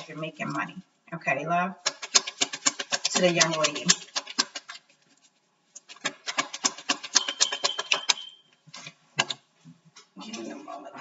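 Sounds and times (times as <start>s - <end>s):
clicks and taps: 1.8s - 4.8s, 5.8s - 9.4s.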